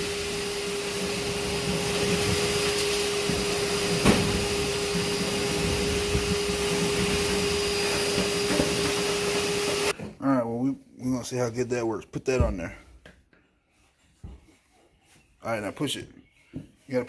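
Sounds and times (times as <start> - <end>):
shop vacuum running: 0.0 - 10.0.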